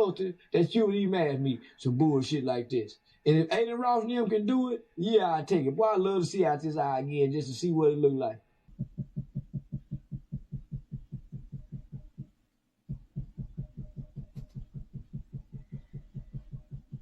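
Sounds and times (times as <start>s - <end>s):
rapid short low pulses: 8.7s - 12.3s, 12.9s - 17.0s.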